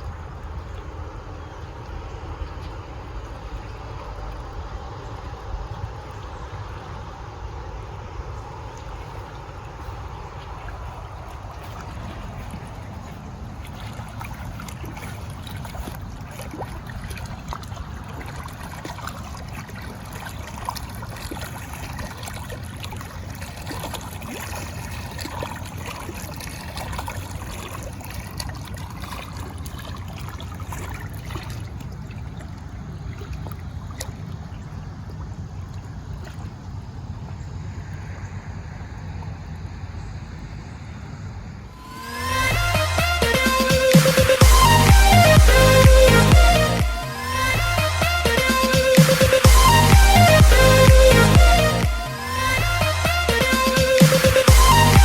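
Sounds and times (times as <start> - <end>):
steady low rumble: 0.0 - 18.8, 36.8 - 55.0
stream trickling and splashing: 0.0 - 55.0.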